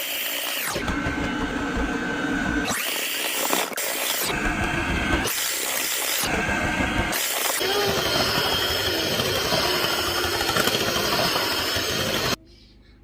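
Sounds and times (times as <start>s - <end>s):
electric mixer beating batter: 0.0s - 12.4s.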